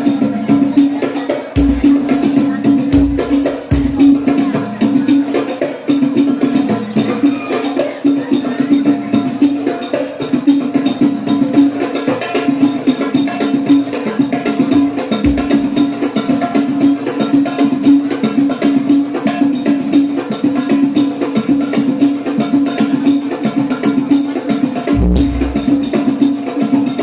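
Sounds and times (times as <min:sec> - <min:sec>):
hand drums beating: 0:00.0 - 0:27.0
steady low tone: 0:25.0 - 0:26.1.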